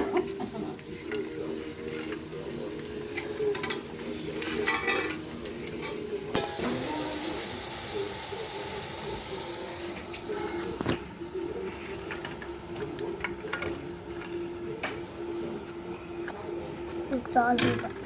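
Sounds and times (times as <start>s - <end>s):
liver sizzling in a pan: 0.0s - 10.7s
metal utensil scraping a pan: 0.8s - 6.7s.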